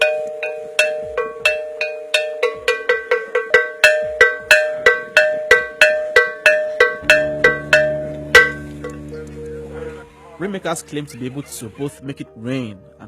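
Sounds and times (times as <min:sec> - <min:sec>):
metal bell strikes: 0:00.0 - 0:09.9
low steady drone: 0:06.9 - 0:11.1.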